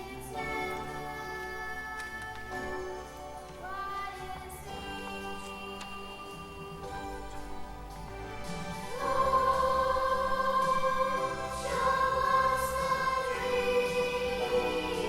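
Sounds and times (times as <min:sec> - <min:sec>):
choir holding sustained notes: 0:08.5 - 0:15.0.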